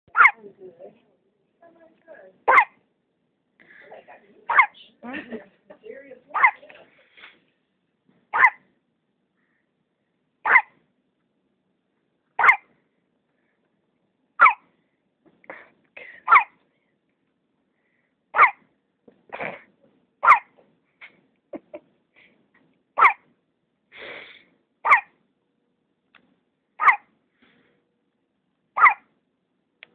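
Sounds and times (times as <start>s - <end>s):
baby hiccups: 2.5s - 2.7s, 24.9s - 25.1s
faint breathy sounds: 9.3s - 10.3s, 17.7s - 18.3s.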